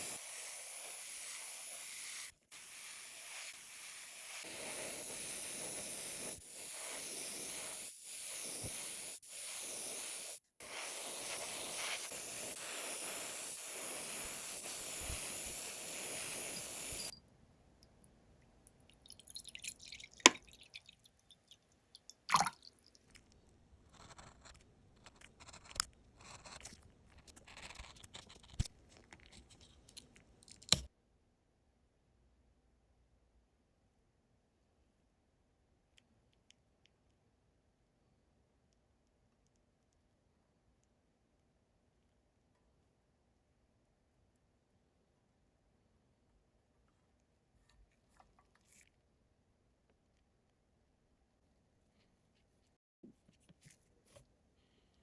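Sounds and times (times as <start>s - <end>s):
airbrush spraying hiss: 0.0s - 17.2s.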